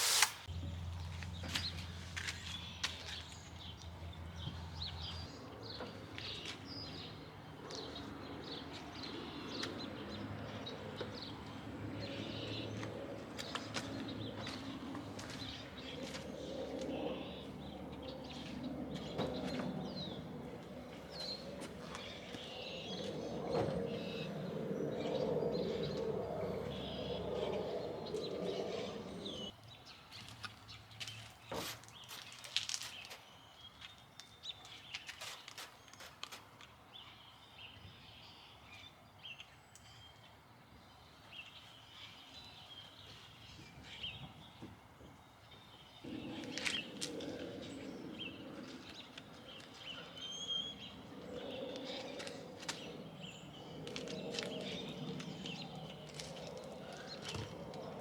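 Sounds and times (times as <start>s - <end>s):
birds chirping: 0.0s - 29.6s, 41.4s - 58.0s.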